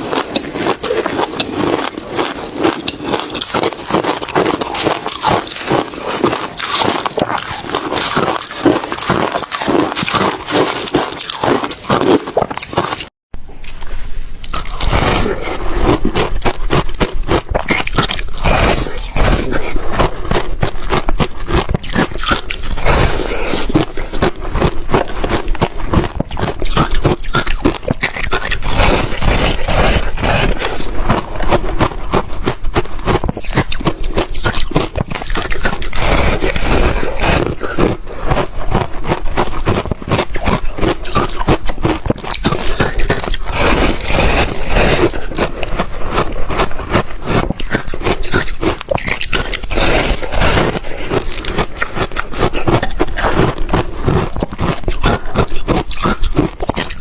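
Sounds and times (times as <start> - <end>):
ice being crunched and chewed: 0.0 - 57.0.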